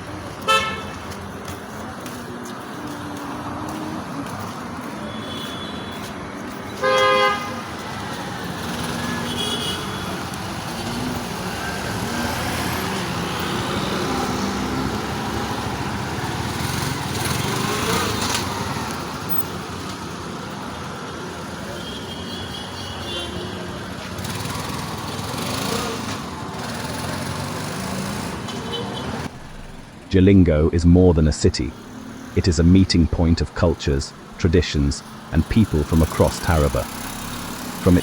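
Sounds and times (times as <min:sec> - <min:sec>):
road traffic noise: 0:00.0 - 0:38.0
vehicle horn blast: 0:00.4 - 0:01.0, 0:05.1 - 0:06.0, 0:06.8 - 0:07.7, 0:09.2 - 0:10.2.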